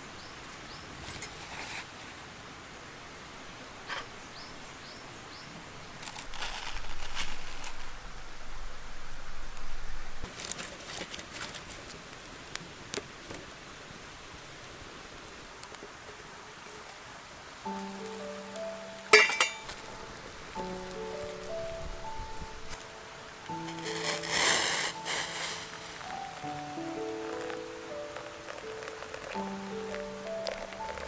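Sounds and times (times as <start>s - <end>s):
rustling: 5.9s - 13.5s, 17.7s - 31.0s
low rumble: 7.3s - 10.2s.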